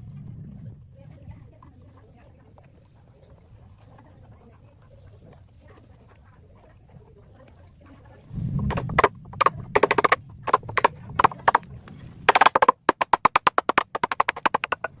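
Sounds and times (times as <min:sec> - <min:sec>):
hammer knocking on wood: 0:08.7 - 0:11.6, 0:12.3 - 0:15.0.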